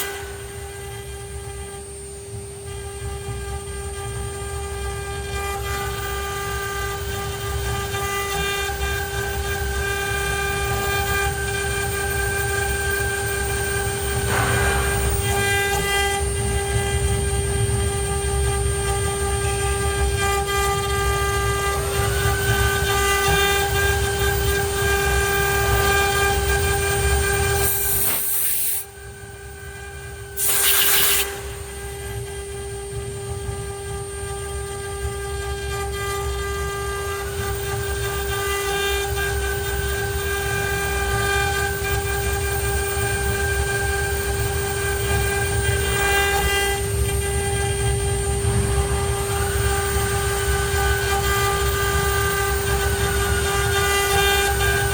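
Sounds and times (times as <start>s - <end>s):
motor whines rising in pitch: 0.0s - 36.4s, 39.0s - 54.9s
router spindle high-pitched whine: 0.0s - 54.9s
short loud rushing burst: 14.3s - 15.7s.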